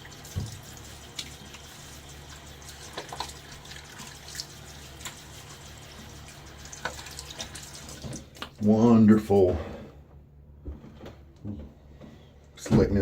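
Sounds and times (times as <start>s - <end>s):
tap running into sink: 0.0s - 1.6s.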